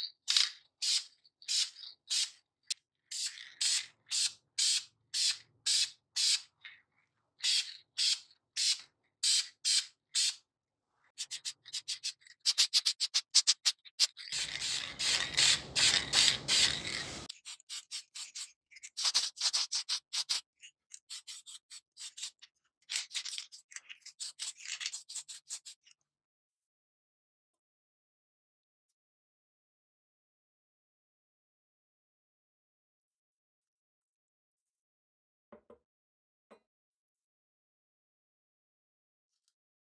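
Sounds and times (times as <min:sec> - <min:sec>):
hand rubbing strokes: 0:14.3 - 0:18.4.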